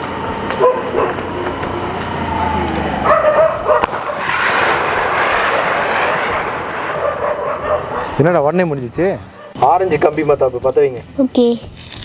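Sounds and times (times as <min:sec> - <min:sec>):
firework crack: 0:03.1 - 0:08.6
hissing spray of sparks: 0:03.8 - 0:08.2.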